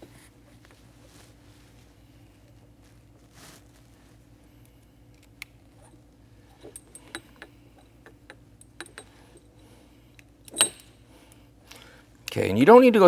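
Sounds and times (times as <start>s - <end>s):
screw tightening metallic clicks: 6.6s - 9.5s, 10.5s - 11.0s.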